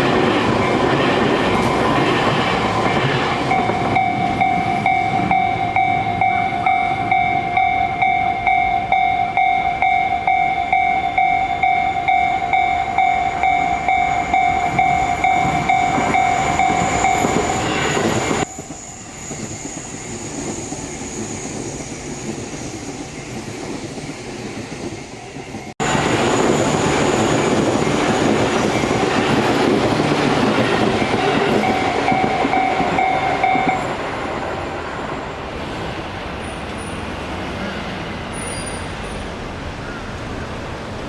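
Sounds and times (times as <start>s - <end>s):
train rumbling past: 0.0s - 41.0s
level-crossing bell ringing: 1.9s - 18.5s, 30.2s - 34.4s.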